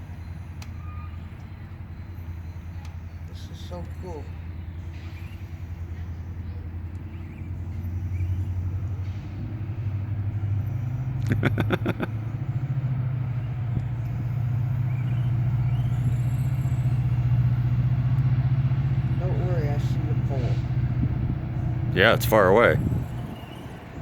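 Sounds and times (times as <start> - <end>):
low motor hum: 5.8 - 24.0.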